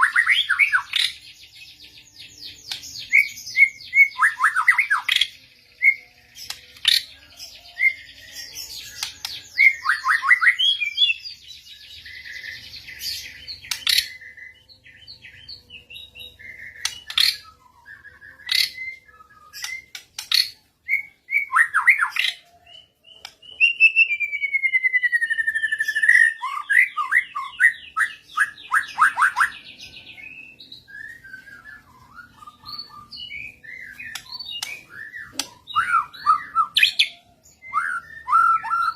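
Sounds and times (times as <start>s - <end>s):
bird song whistles and trills: 0.0s - 38.9s.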